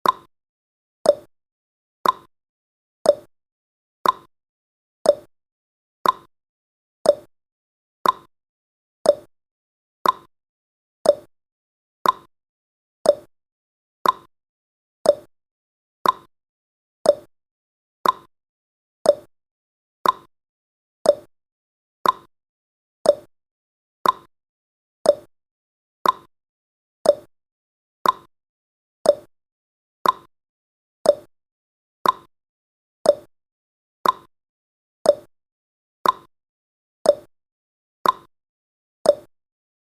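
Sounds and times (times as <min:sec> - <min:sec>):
clock ticking: 0:02.0 - 0:02.3, 0:04.0 - 0:04.3, 0:06.0 - 0:06.3, 0:08.0 - 0:08.3, 0:10.0 - 0:10.3, 0:12.0 - 0:12.3, 0:14.0 - 0:14.3, 0:15.1 - 0:15.3, 0:16.0 - 0:16.3, 0:18.0 - 0:18.3, 0:20.0 - 0:20.3, 0:22.0 - 0:22.3, 0:24.0 - 0:24.3, 0:25.1 - 0:25.3, 0:26.0 - 0:26.3, 0:27.1 - 0:27.3, 0:28.0 - 0:28.3, 0:29.1 - 0:29.3, 0:30.0 - 0:30.3, 0:32.0 - 0:32.3, 0:33.1 - 0:33.3, 0:34.0 - 0:34.3, 0:36.0 - 0:36.3, 0:38.0 - 0:38.3.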